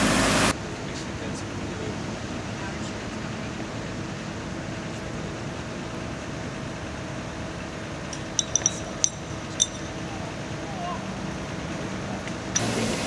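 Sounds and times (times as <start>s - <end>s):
outdoor background noise: 0.0s - 13.0s
light high clinks: 8.0s - 10.7s, 12.2s - 12.9s.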